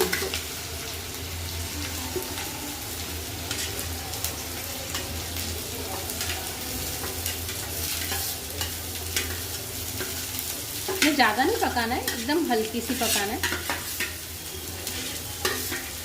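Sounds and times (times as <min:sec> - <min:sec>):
vegetables sizzling in hot oil: 0:00.0 - 0:16.0
spatula scraping a pan: 0:06.2 - 0:16.0.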